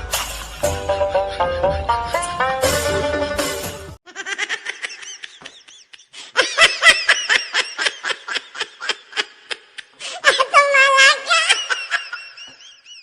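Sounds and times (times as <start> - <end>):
comedy laughing sound effect: 0.2 - 9.9.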